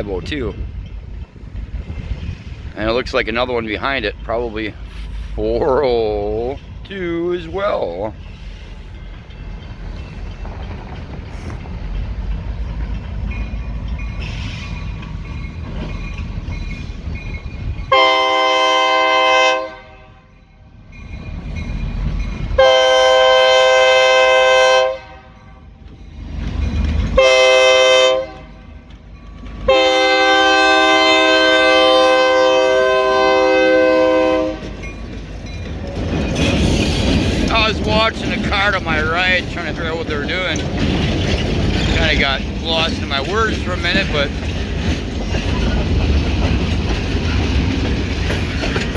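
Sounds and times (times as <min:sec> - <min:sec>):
locomotive horn chord blasts: 0:17.9 - 0:20.4, 0:22.6 - 0:25.7, 0:27.2 - 0:28.6, 0:29.7 - 0:34.8.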